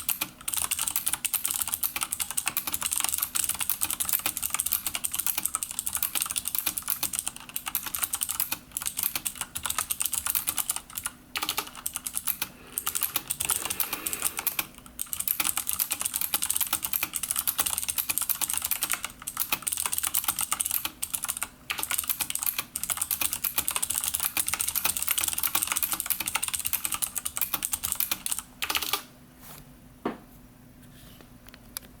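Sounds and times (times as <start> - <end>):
fast typing on mechanical keyboard: 0.0 - 29.1.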